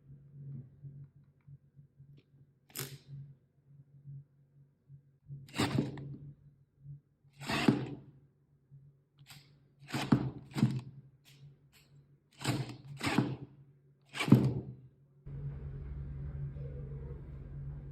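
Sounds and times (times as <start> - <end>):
steady low hum: 15.3 - 17.9.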